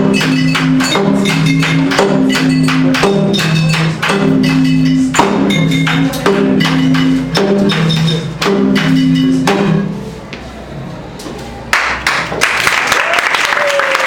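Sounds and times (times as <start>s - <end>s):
sharp percussion hits: 0.0s - 10.3s
audience applause: 11.7s - 14.0s.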